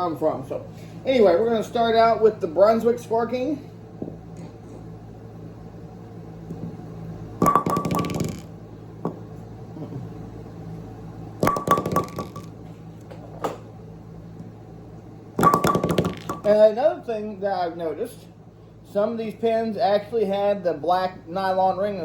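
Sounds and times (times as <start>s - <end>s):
bowling pin clattering: 7.4s - 8.5s, 11.4s - 13.6s, 15.4s - 16.6s.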